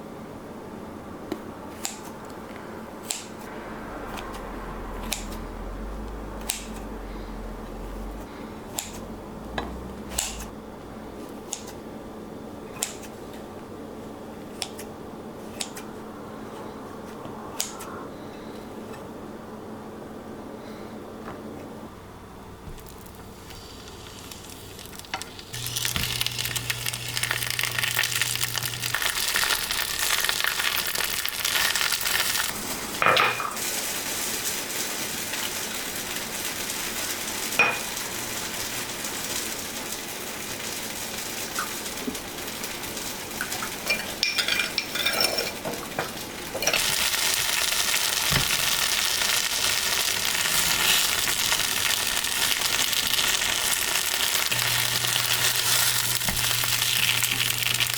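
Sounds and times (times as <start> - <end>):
food sizzling in a frying pan: 22.9 - 57.9.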